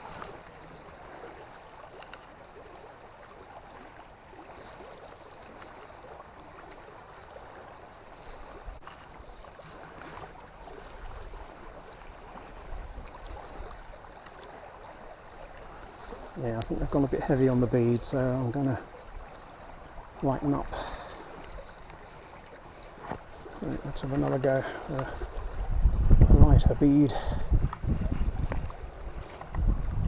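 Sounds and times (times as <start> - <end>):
river flowing: 0.0 - 30.0
faint clicks: 1.9 - 2.4.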